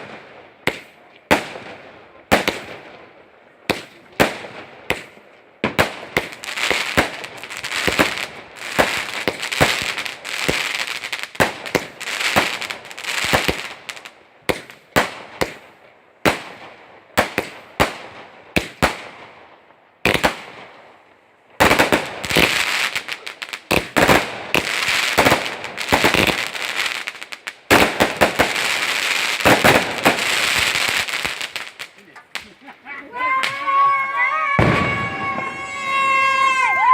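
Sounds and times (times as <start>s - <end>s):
fireworks bangs and crackling: 0.0s - 36.9s
people's voices: 32.0s - 36.9s
person shouting: 32.8s - 36.9s.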